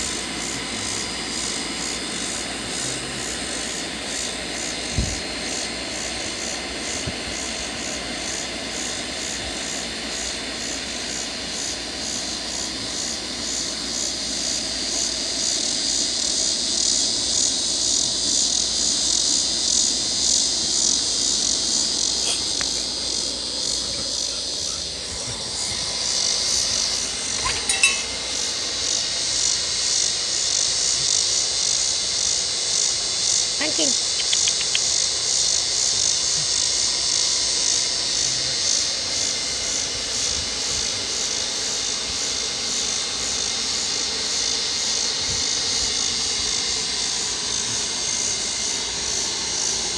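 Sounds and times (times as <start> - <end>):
low rumbling hum from sky: 0.0 - 29.8
cicadas buzzing: 0.0 - 49.9
sharp click: 34.2 - 35.0.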